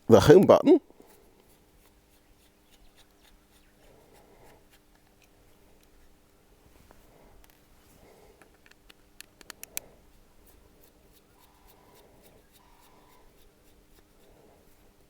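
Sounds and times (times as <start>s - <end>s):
faint steady hum: 0.0s - 15.0s
light rubbing of phone: 1.0s - 8.2s, 9.6s - 15.0s
small sharp clicks: 8.4s - 9.9s.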